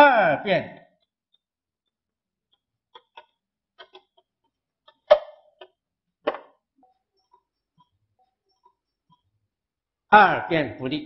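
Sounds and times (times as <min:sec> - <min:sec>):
irregular taps and knocks: 0:03.0 - 0:06.6.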